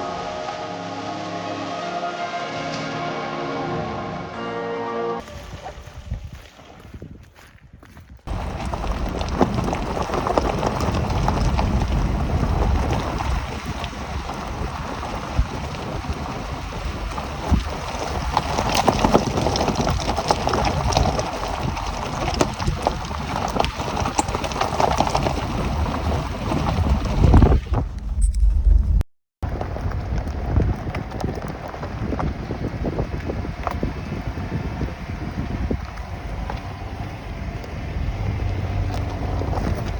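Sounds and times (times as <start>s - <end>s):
wind buffeting microphone: 5.2s - 39.9s
tyres rumbling through mud: 8.3s - 39.9s.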